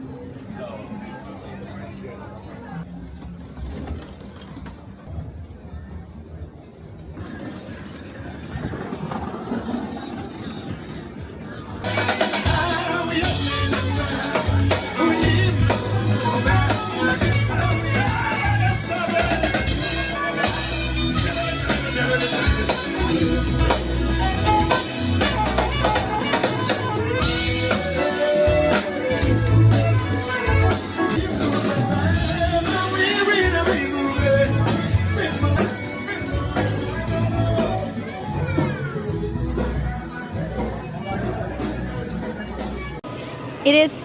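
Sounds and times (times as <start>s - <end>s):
background music with bass beat: 11.9s - 43.0s.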